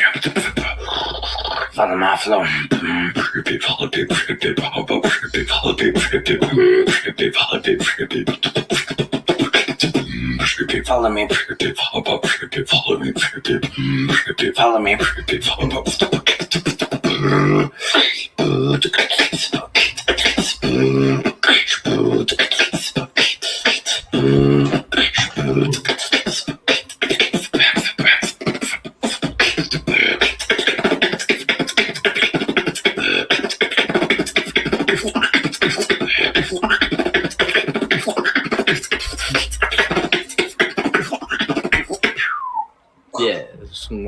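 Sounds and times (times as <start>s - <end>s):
person beatboxing: 0.0s - 42.6s
hummed notes: 2.8s - 11.6s, 12.7s - 17.7s, 18.4s - 23.3s, 23.9s - 26.0s, 28.9s - 42.4s.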